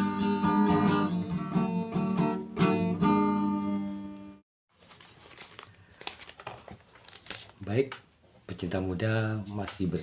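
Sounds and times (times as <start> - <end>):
acoustic guitar chord ringing: 0.0 - 4.4.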